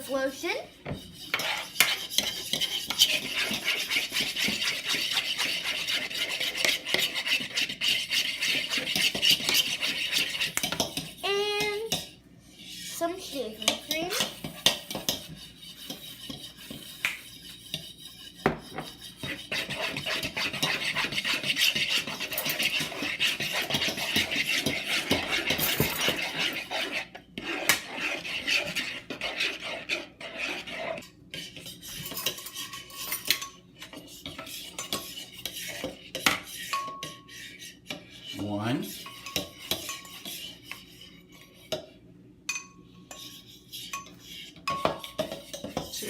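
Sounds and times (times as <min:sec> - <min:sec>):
utensil stirring and scraping bowl: 0:00.0 - 0:46.0
utensil clinking against bowl: 0:37.9 - 0:40.5.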